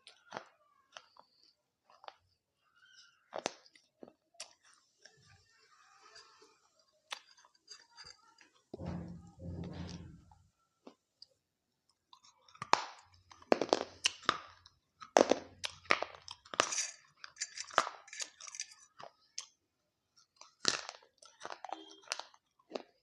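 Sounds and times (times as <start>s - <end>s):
crunching and chewing crisps: 11.9s - 19.6s, 20.2s - 23.0s.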